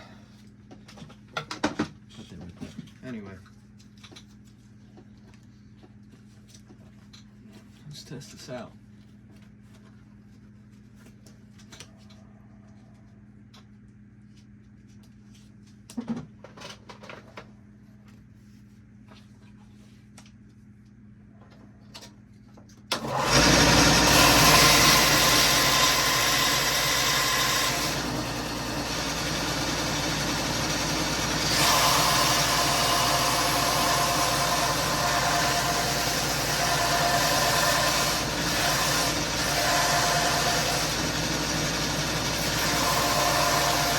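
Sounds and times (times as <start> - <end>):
belt sander motor whirring: 22.9 - 43.9.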